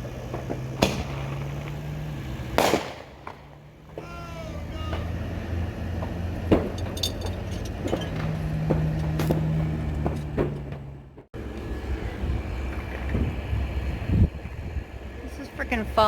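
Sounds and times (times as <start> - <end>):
fireworks popping and cracking: 0.0 - 4.1.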